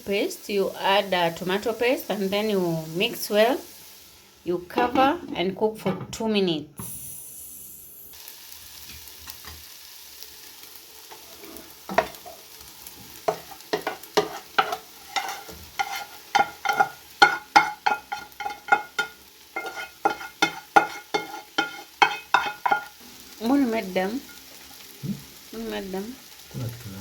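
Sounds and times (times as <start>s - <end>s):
faint sizzle: 0.0s - 5.8s, 6.8s - 27.0s
food stirred in hot pan: 8.1s - 25.6s.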